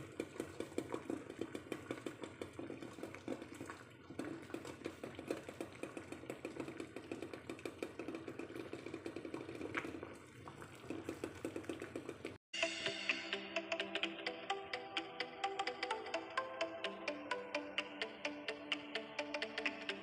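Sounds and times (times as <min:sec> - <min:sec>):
water boiling with rattling eggs: 0:00.0 - 0:12.5.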